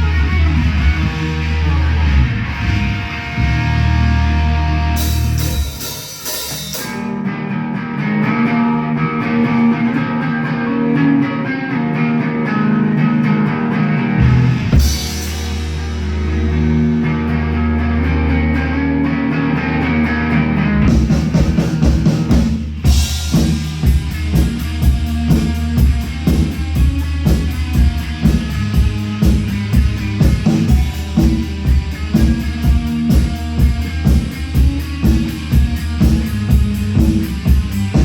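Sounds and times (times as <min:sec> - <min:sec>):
electric guitar and bass chord: 0:00.0 - 0:21.2, 0:22.8 - 0:38.0
rock band playing: 0:00.0 - 0:38.0
drum kit beat: 0:04.9 - 0:07.2, 0:14.2 - 0:17.4, 0:20.8 - 0:38.0.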